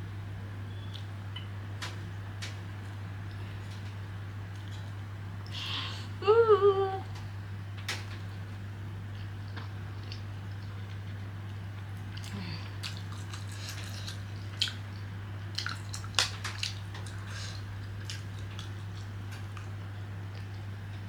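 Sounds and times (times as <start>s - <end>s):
steady low hum: 0.0s - 21.0s
wet chewing and biting: 9.2s - 20.7s.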